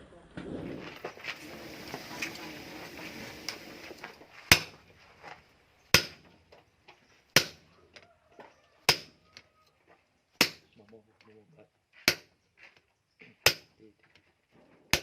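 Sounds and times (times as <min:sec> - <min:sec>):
low background noise: 0:00.0 - 0:15.0
hammer striking metal: 0:06.0 - 0:06.2, 0:07.4 - 0:07.6, 0:08.9 - 0:09.1.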